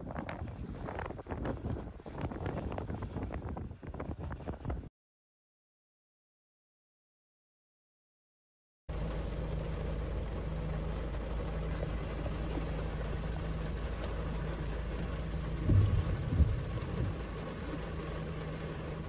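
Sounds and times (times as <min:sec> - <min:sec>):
car engine idling: 0:09.0 - 0:19.0
low rumble: 0:11.0 - 0:19.0.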